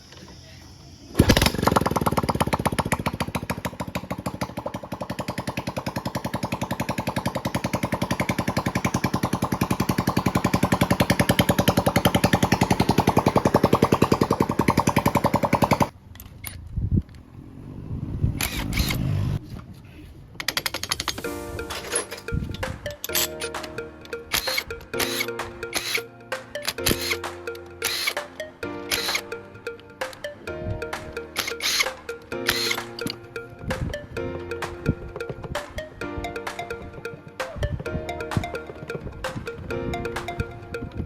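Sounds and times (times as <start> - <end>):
motorcycle engine running: 1.2 - 15.9.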